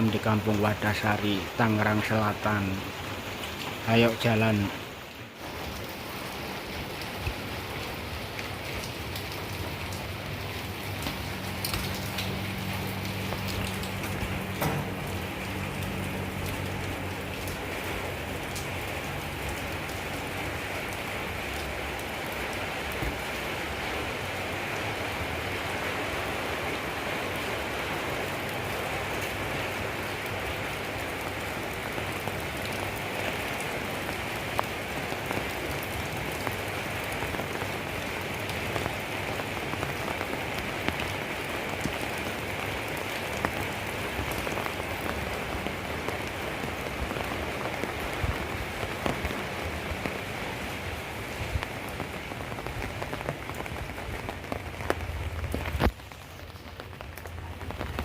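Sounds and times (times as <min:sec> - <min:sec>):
steady rain hiss: 0:00.0 - 0:58.0
raindrop hits: 0:05.4 - 0:24.1, 0:31.1 - 0:58.0.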